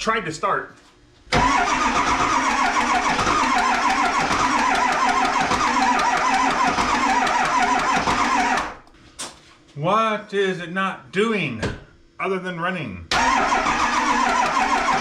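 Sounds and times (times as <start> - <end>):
diesel engine starter cranking: 1.3 - 8.8, 13.1 - 15.0.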